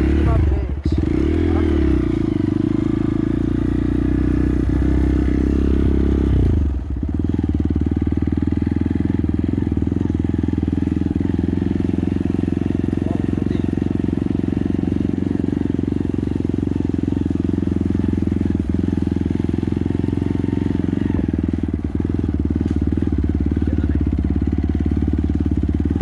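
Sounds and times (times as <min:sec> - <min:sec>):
motorcycle engine running: 0:00.0 - 0:26.0.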